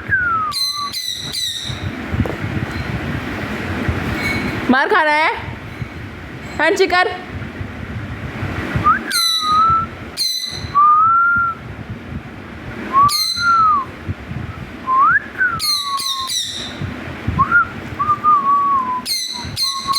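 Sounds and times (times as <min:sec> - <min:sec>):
parrot whistled notes: 0:00.3 - 0:01.8, 0:09.0 - 0:11.0, 0:13.0 - 0:13.8, 0:15.5 - 0:16.8, 0:18.1 - 0:19.9
parrot harsh calls: 0:00.5 - 0:01.8, 0:09.1 - 0:09.6, 0:10.2 - 0:10.7, 0:15.6 - 0:16.8.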